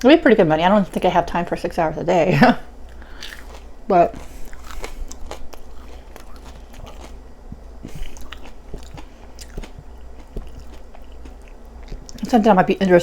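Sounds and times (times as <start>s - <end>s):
chewing and biting food: 2.8s - 12.5s.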